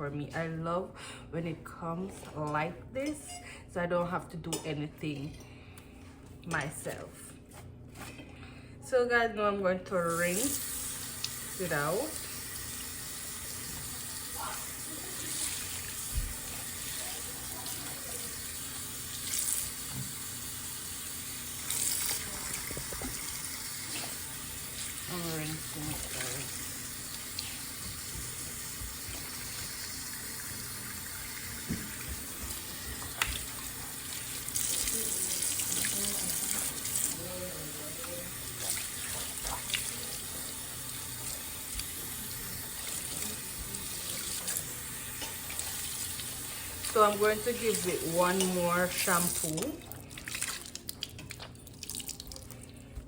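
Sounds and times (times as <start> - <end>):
tap water running into sink: 10.3 - 52.6.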